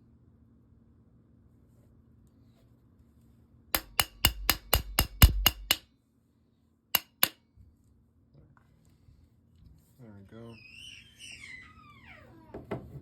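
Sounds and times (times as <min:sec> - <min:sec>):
hammer tapping: 0:03.8 - 0:05.8, 0:07.0 - 0:07.4.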